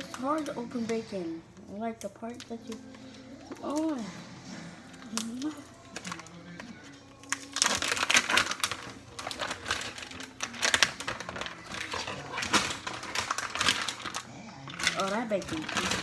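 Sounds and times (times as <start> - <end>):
plastic packaging crinkling: 4.9 - 16.0.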